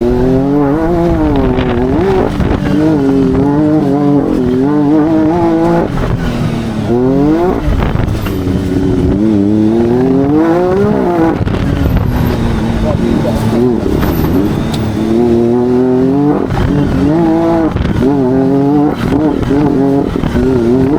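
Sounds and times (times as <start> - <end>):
engine revving: 0.0 - 20.9.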